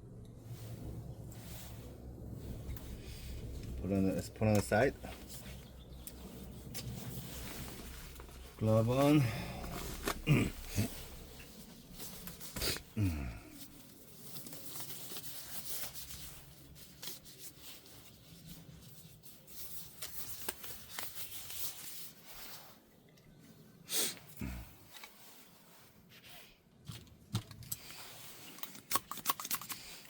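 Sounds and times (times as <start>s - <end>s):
glove rustling and crinkling: 0.5s - 23.7s, 24.3s - 28.8s
light clicks of small parts: 26.8s - 30.0s.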